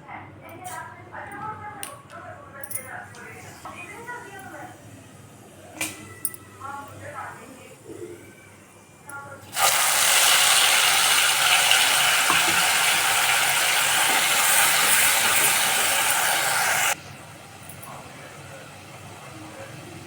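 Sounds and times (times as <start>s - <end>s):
cooking pot hissing: 9.5s - 20.0s.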